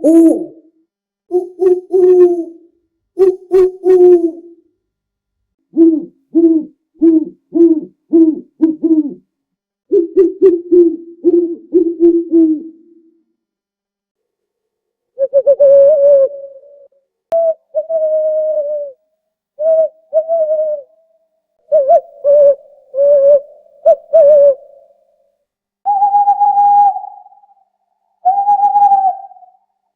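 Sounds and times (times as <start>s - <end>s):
owl hooting: 0.0s - 2.6s, 3.2s - 4.6s, 5.7s - 9.2s, 9.9s - 13.0s, 15.2s - 19.0s, 19.6s - 21.0s, 21.7s - 25.0s, 25.9s - 29.7s.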